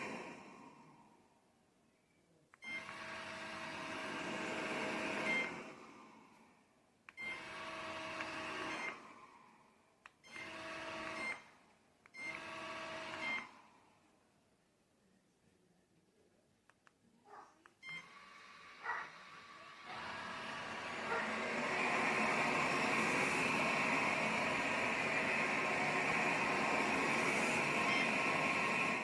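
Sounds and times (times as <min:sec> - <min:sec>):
robot vacuum motor whirring: 0:02.6 - 0:06.1, 0:07.2 - 0:09.3, 0:10.3 - 0:11.6, 0:12.2 - 0:13.7, 0:17.8 - 0:29.0
click: 0:07.0 - 0:07.2, 0:10.0 - 0:10.5, 0:12.0 - 0:12.5, 0:16.6 - 0:17.0.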